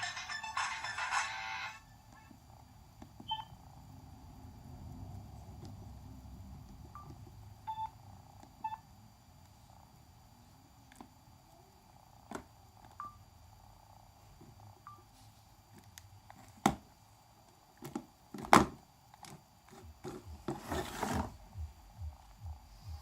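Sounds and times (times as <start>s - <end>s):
phone key beeps: 3.2s - 3.5s.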